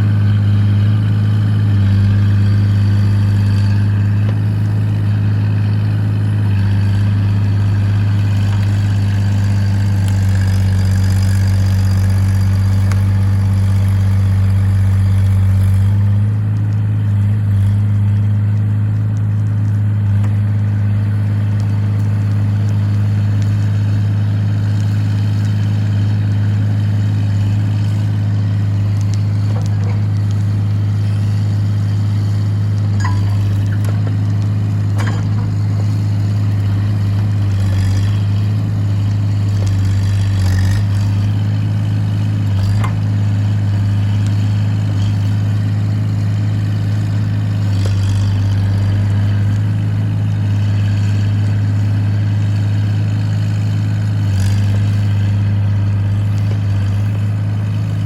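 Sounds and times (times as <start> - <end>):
excavator diesel engine: 0.0 - 58.0
faint knocks and clanks: 35.0 - 35.5.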